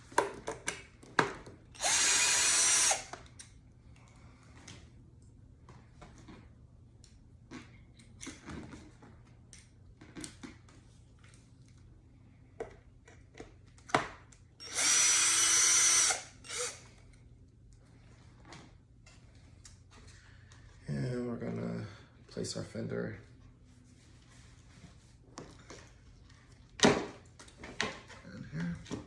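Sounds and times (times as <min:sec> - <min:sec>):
cordless drill running: 0:01.8 - 0:03.2, 0:14.6 - 0:16.9
tool and screws clicking: 0:01.8 - 0:03.6, 0:14.6 - 0:16.8.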